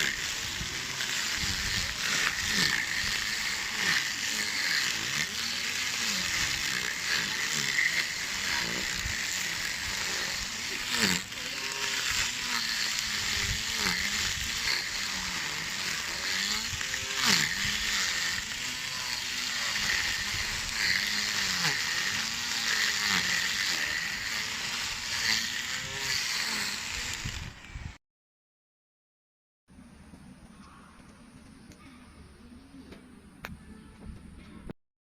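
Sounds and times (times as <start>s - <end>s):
lawn mower motor whine: 0.0s - 28.0s.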